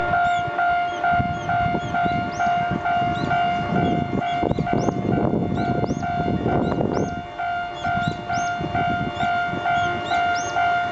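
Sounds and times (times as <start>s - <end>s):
level crossing warning bell: 0.0s - 10.9s.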